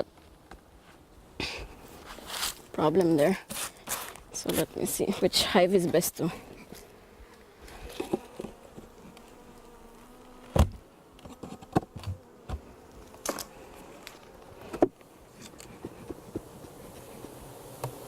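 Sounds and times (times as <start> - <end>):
honeybees buzzing: 4.2 - 18.0
knocks on wooden hive box: 10.5 - 10.8.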